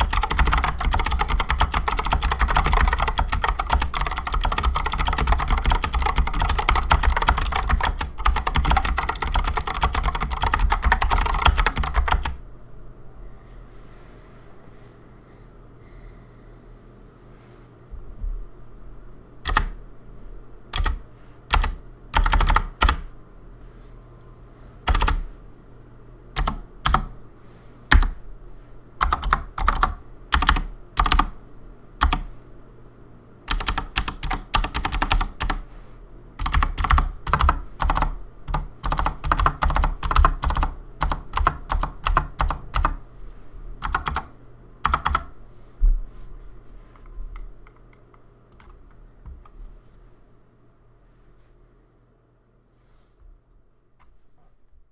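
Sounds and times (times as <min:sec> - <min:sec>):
clicky keyboard typing: 0:00.0 - 0:12.4, 0:19.4 - 0:19.8, 0:20.7 - 0:23.1, 0:24.8 - 0:25.2, 0:26.4 - 0:27.1, 0:27.9 - 0:28.2, 0:29.0 - 0:31.3, 0:32.0 - 0:32.3, 0:33.5 - 0:35.6, 0:36.4 - 0:43.0, 0:43.8 - 0:45.3, 0:47.4 - 0:48.8.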